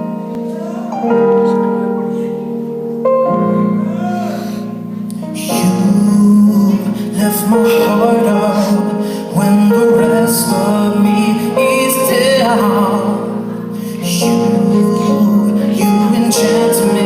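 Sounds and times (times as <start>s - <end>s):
held chords: 0.0s - 17.0s
person singing with vibrato: 3.8s - 17.0s.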